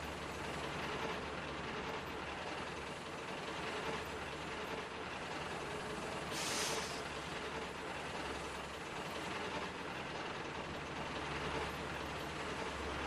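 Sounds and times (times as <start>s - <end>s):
locomotive engine rumble: 0.0s - 13.0s
pressure release hiss: 6.3s - 7.0s.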